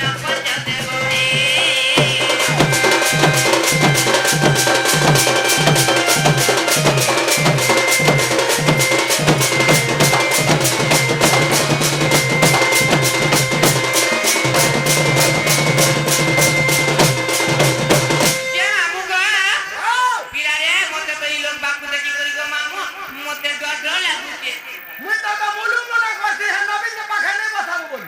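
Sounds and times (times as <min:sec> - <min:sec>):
drums beating fast: 0:00.0 - 0:18.9
rapid cymbal strikes: 0:00.0 - 0:19.6
long held high note: 0:01.0 - 0:19.5.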